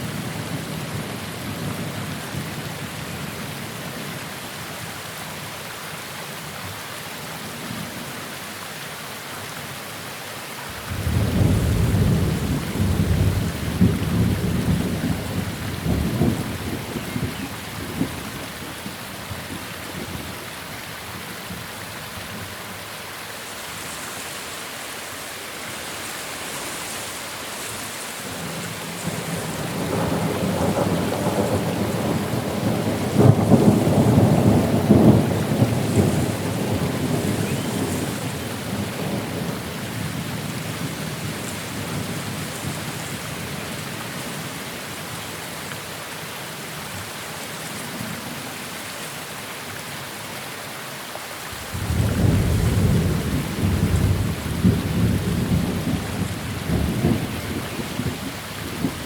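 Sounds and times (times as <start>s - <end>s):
steady rain: 0.0s - 59.0s
thunder rolling: 10.7s - 18.2s, 28.4s - 39.6s, 51.6s - 59.0s.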